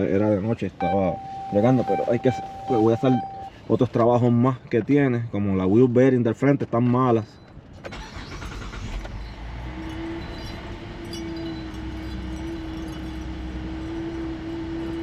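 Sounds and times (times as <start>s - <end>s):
steady mid-pitched tone: 0.8s - 3.6s
car engine fast idle: 7.9s - 9.2s.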